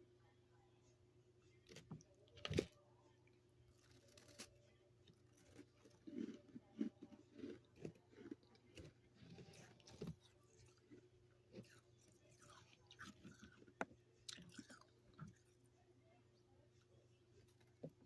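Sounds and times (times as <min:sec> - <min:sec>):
soft squishy chewing crunches: 0:01.7 - 0:15.7.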